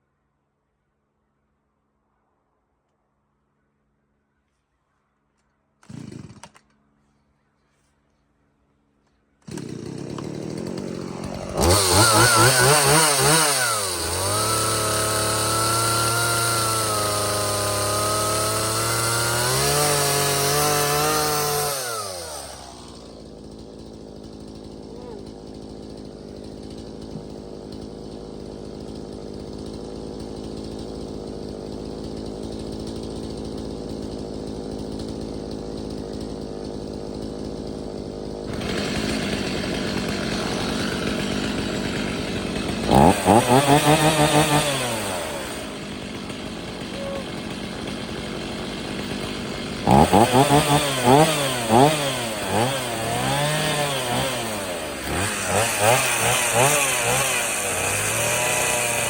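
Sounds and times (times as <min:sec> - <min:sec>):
chainsaw idling and revving: 0:05.8 - 0:06.8, 0:09.1 - 0:59.0.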